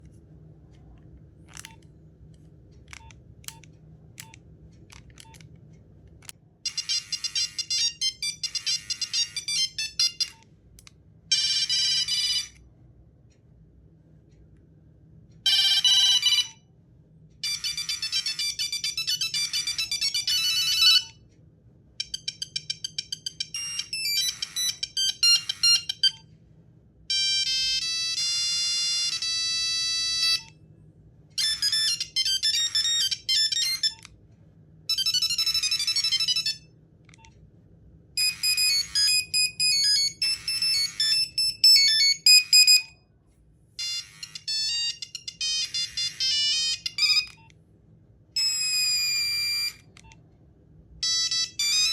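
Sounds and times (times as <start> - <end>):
monophonic phone ringtones: 6.7 - 10.4, 11.3 - 12.6, 15.5 - 16.6, 17.4 - 21.2, 22.0 - 26.2, 27.1 - 30.5, 31.4 - 34.1, 34.9 - 36.7, 38.2 - 43.0, 43.8 - 47.5, 48.4 - 50.0, 51.0 - 51.9.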